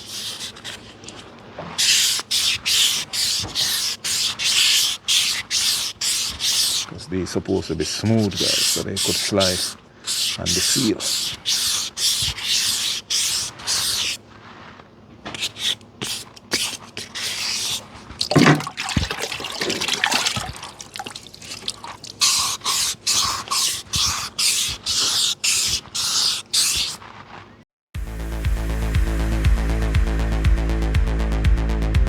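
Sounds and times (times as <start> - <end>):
wet sandpaper rasping: 0.0 - 27.5
electronic music with steady beat: 28.0 - 32.0.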